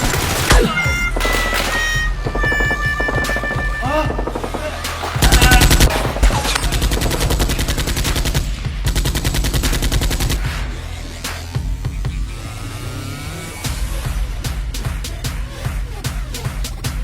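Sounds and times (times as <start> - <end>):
automatic gunfire: 0.0 - 10.4
background music: 0.0 - 17.0.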